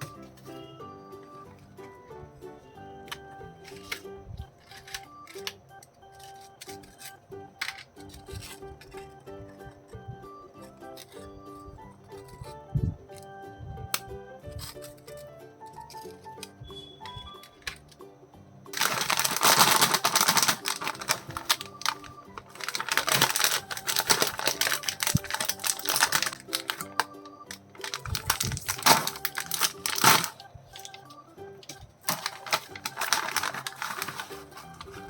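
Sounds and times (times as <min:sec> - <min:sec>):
background music: 0:00.0 - 0:35.0
plastic wrapper crinkling and tearing: 0:03.6 - 0:09.1, 0:18.8 - 0:35.0.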